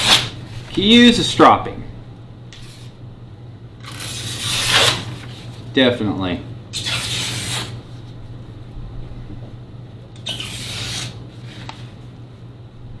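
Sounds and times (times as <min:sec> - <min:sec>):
blade slicing through paper: 0:00.0 - 0:00.7, 0:03.8 - 0:05.5, 0:06.8 - 0:07.8, 0:10.2 - 0:11.7.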